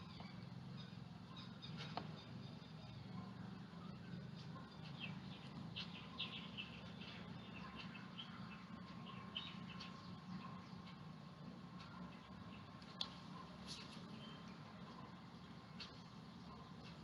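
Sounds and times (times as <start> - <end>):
faint bird chirps: 0.0 - 17.0.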